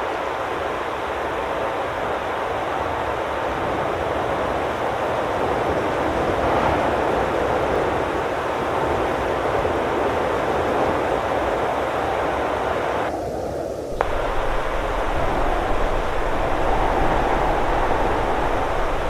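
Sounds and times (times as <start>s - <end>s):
television static hiss: 10.9s - 19.0s.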